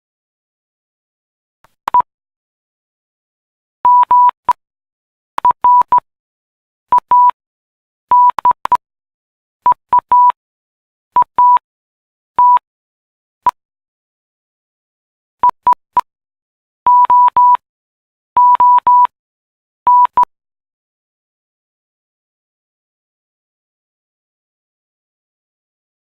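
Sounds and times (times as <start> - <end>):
morse code beeps: 3.9 - 4.6, 5.4 - 6.0, 6.9 - 7.4, 8.1 - 8.8, 9.7 - 10.4, 11.2 - 11.6, 12.4 - 12.6, 16.9 - 17.6, 18.4 - 19.1, 19.9 - 20.3.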